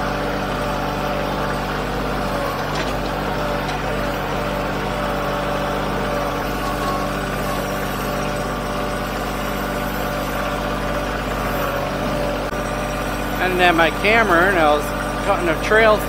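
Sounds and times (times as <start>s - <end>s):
tractor diesel engine running: 0.0s - 16.0s.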